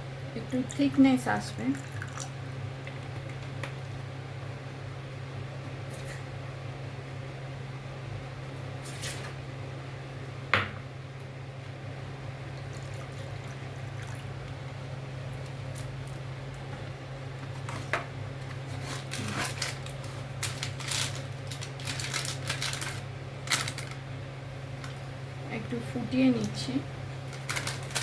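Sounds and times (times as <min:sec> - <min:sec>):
steady low hum: 0:00.0 - 0:28.0.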